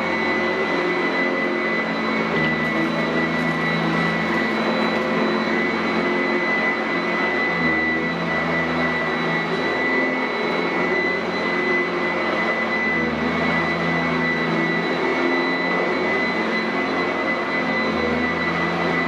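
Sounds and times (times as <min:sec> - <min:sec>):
upright vacuum running over carpet: 0:00.0 - 0:19.0.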